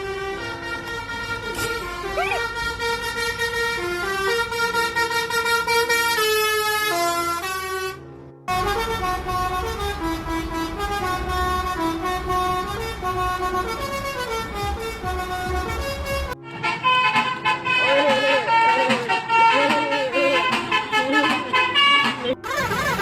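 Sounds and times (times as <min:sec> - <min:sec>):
musical truck horns playing tunes: 0:00.0 - 0:23.0.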